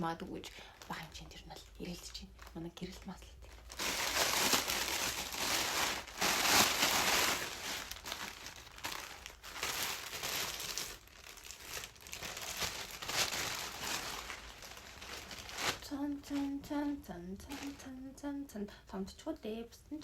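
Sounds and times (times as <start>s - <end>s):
packaging crinkling: 3.4s - 16.6s, 17.5s - 17.9s.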